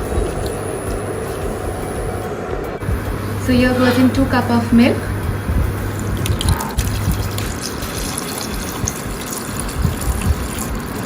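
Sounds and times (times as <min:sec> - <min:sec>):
chicken cooking in fat: 0:06.0 - 0:11.0.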